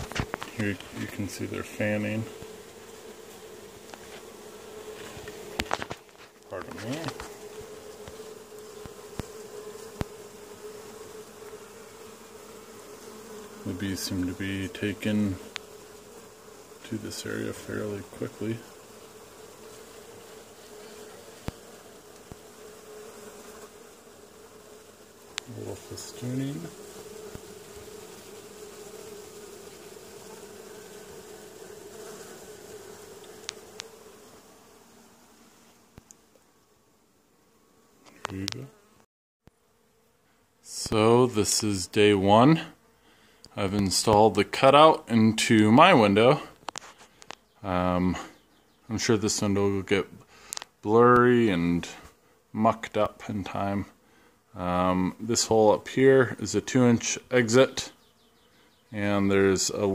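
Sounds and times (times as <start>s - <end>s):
bees buzzing: 0.0s - 59.9s.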